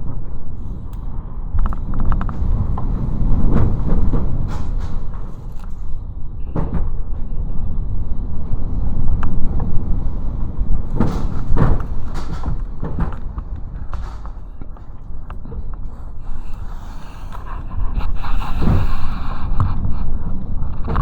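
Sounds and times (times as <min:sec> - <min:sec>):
wind buffeting microphone: 0:00.0 - 0:21.0
knocks and rattles: 0:09.2 - 0:16.6.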